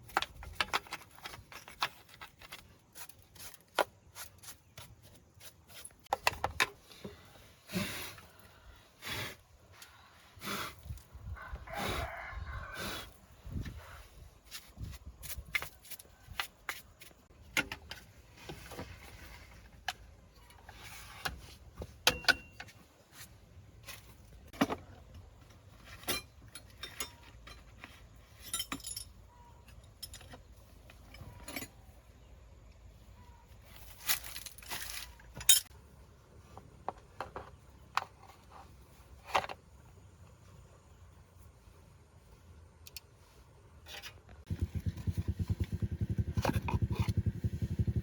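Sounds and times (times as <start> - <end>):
metal tools clinking and knocking: 22.0 - 22.8, 25.8 - 32.0, 34.1 - 35.8.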